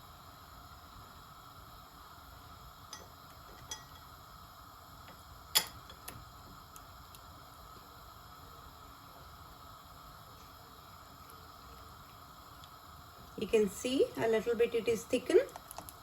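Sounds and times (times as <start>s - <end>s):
gravy simmering hiss: 0.0s - 16.0s
metal spoon clinking on pan: 2.9s - 4.1s.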